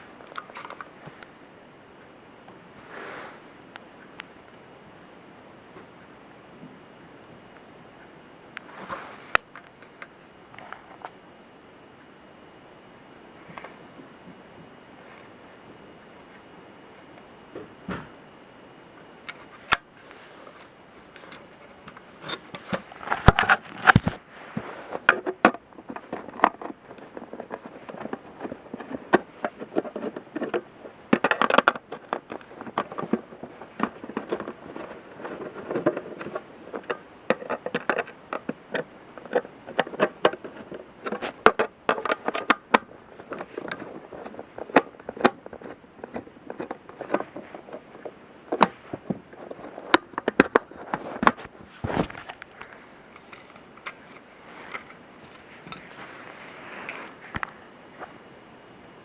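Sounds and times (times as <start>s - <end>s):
plastic handling clicks and scraping: 0.0s - 1.4s, 19.2s - 58.3s.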